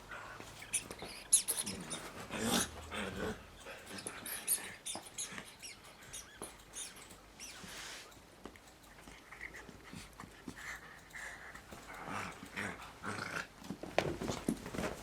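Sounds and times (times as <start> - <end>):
squeaky toy squeaks: 0.6 - 2.7, 4.0 - 7.7.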